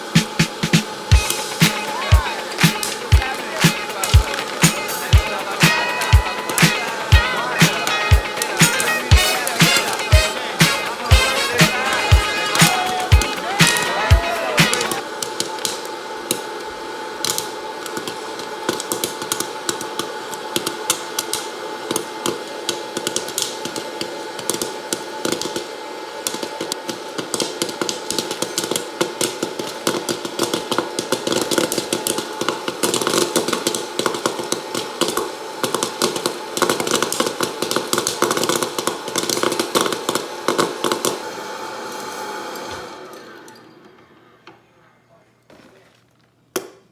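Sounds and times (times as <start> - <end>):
steady hum: 0.0 - 26.3
popcorn popping: 0.0 - 41.8.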